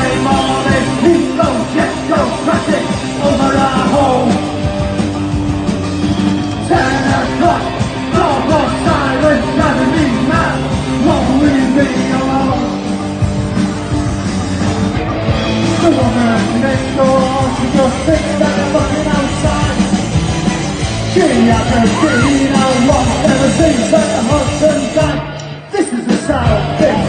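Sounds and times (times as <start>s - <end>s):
person singing: 0.0s - 4.5s, 6.7s - 12.8s, 21.1s - 27.0s
punk rock band playing: 0.0s - 27.0s.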